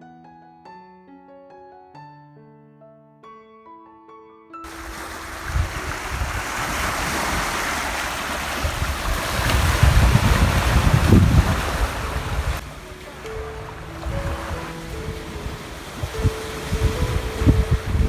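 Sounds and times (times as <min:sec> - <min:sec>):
waves washing on shore: 0:04.7 - 0:18.0
wind buffeting microphone: 0:04.7 - 0:18.0
background music: 0:12.6 - 0:18.0.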